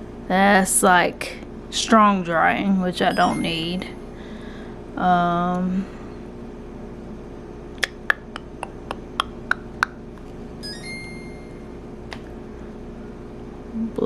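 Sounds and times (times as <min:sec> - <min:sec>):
steady electronic beep: 0:03.1 - 0:04.0, 0:10.6 - 0:11.7.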